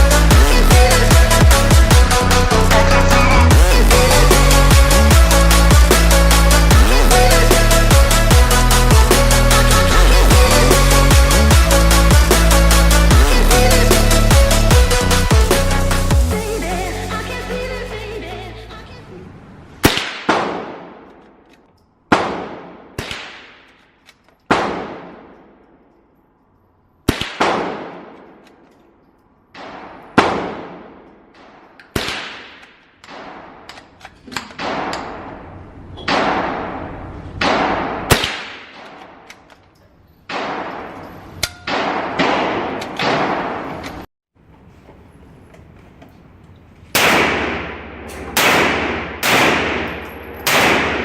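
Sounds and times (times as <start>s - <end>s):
gunshots echoing indoors: 19.8s - 26.0s, 27.0s - 28.6s, 29.5s - 33.7s, 34.4s - 39.5s, 40.2s - 44.1s, 46.9s - 51.0s.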